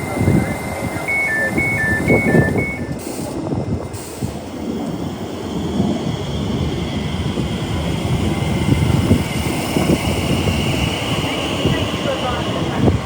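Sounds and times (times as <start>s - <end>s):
rail hiss: 0.0s - 13.0s
train rumbling: 0.0s - 13.0s
wind buffeting microphone: 0.0s - 13.0s.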